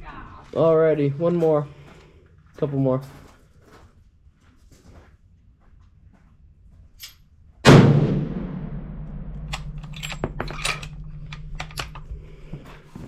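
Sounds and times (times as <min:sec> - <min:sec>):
rifle shot echoing: 0:07.6 - 0:12.5
low hum: 0:07.7 - 0:13.0.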